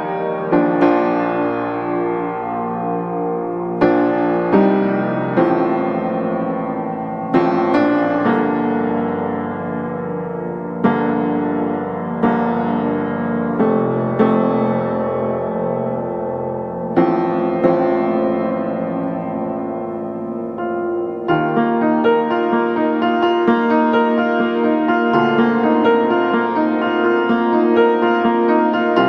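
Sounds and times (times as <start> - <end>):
slow piano chords: 0.0 - 29.0.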